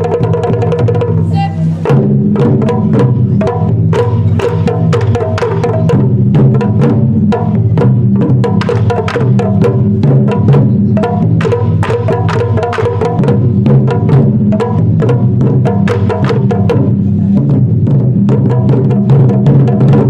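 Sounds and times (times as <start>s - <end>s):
taiko drums ensemble: 0.0s - 20.0s.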